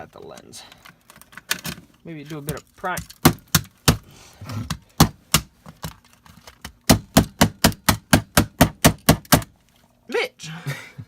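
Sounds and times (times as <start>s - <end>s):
tool knocking on plastic and metal: 2.5s - 4.0s, 4.6s - 6.0s, 6.6s - 9.5s.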